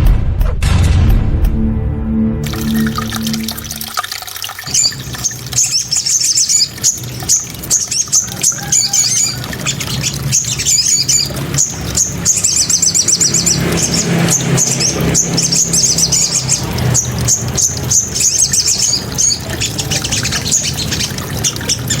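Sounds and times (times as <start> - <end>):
songbird trilling and chirping: 4.7 - 22.0.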